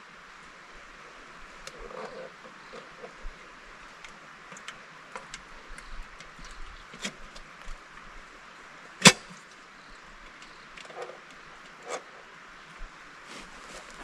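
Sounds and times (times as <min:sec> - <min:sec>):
light clicks and ticks: 0:03.9 - 0:08.1.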